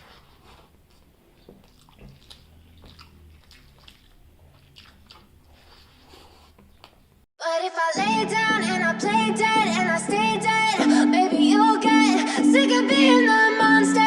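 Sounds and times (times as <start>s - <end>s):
wet chewing and crunching: 0.0s - 7.3s.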